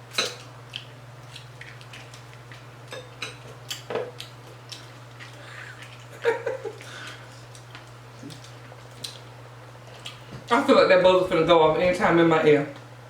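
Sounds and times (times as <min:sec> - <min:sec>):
steady low hum: 0:00.0 - 0:13.0
person chewing food: 0:00.1 - 0:10.5.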